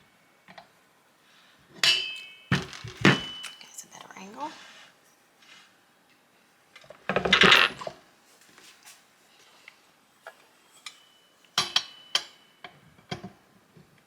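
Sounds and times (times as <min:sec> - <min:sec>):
metal parts clattering: 0:02.5 - 0:03.8, 0:07.3 - 0:07.9.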